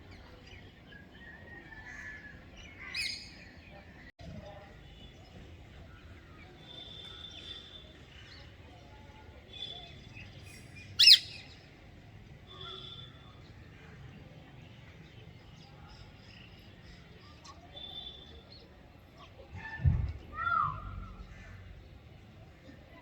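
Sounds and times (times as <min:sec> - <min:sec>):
shrill sweeping bird call: 0:11.0 - 0:11.5.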